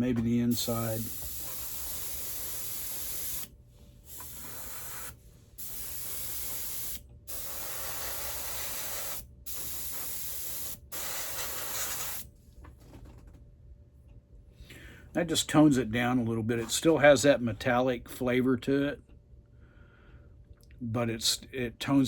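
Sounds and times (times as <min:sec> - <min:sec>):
airbrush spraying: 0:00.5 - 0:03.5, 0:04.1 - 0:12.3.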